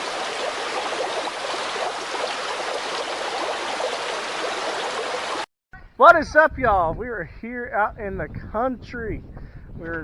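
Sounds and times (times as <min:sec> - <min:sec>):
running water babbling: 0:00.0 - 0:05.5.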